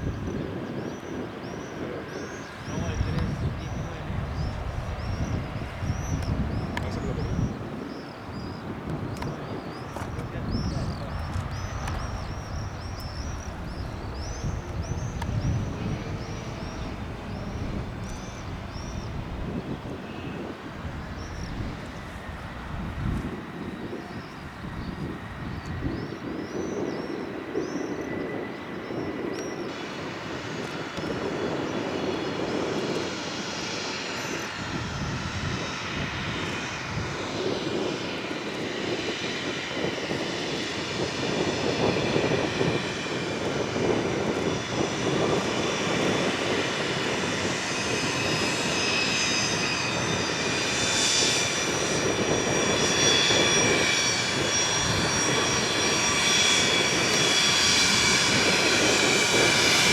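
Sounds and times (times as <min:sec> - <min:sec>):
jet engines with turbine whine: 0:00.0 - 0:59.9.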